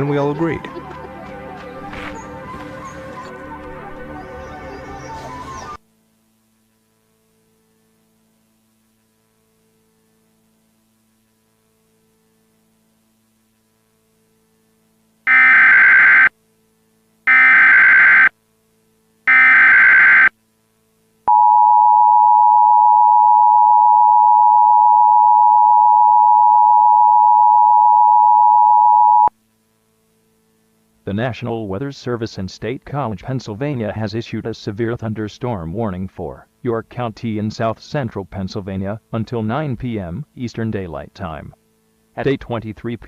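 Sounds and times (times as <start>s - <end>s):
faint hum: 0.0s - 43.0s
buzzy data tones: 15.2s - 16.4s, 17.2s - 18.4s, 19.2s - 20.4s
two-tone attention signal: 19.3s - 20.3s, 21.3s - 29.3s.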